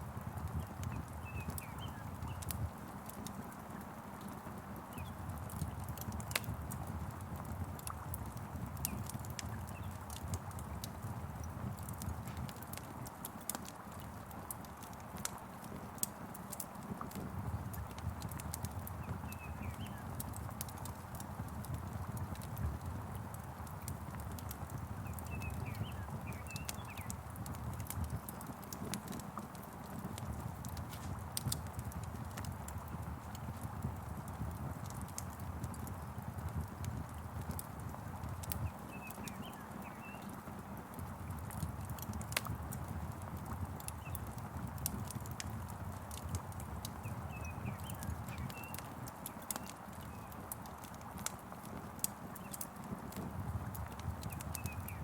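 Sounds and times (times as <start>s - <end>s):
wood fire crackling: 0.0s - 55.0s
bird chirps: 38.6s - 40.3s.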